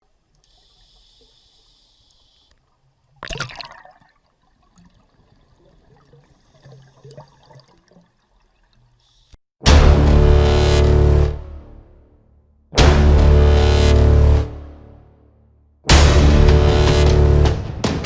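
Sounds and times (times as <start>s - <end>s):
sea water sloshing and splashing: 2.6s - 9.2s.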